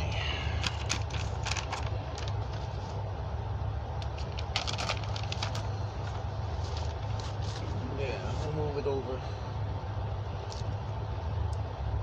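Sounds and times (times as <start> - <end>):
steady low hum: 0.0 - 12.0
paper targets clicking and rattling: 0.6 - 2.7, 4.1 - 5.7.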